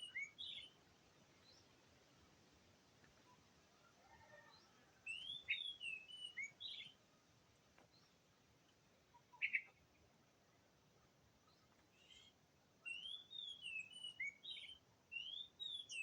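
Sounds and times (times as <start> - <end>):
bird singing whistled notes: 0.0 - 0.7, 5.1 - 6.9, 12.8 - 16.0.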